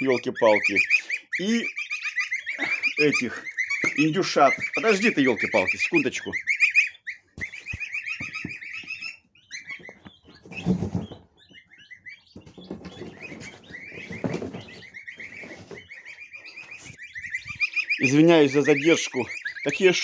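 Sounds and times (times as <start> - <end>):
goslings and poults peeping: 0.0 - 20.0
rustling and scuffling: 7.4 - 17.9.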